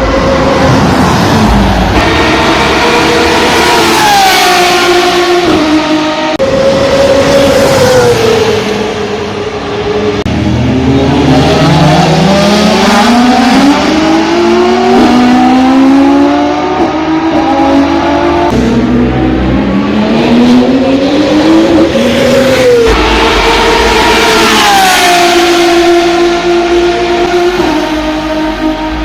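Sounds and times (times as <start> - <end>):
race car engine accelerating: 0.0 - 29.0.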